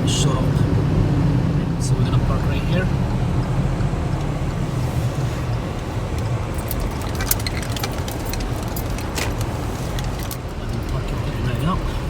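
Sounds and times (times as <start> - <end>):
car engine and road rumble: 0.0 - 12.0
light clicks and crackles: 5.8 - 11.3.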